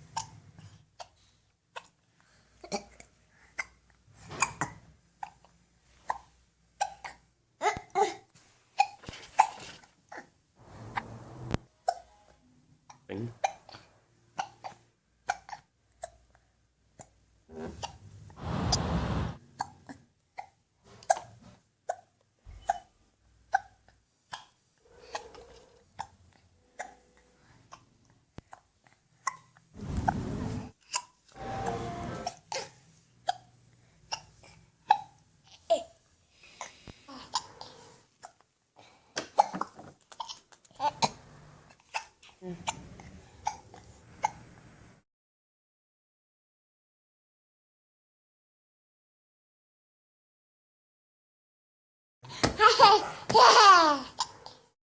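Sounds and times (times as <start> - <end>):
baby hiccuping: 4.4 - 8.1, 11.8 - 12.2, 17.0 - 18.0, 19.6 - 22.9, 26.8 - 28.6, 34.1 - 35.8, 43.4 - 44.4.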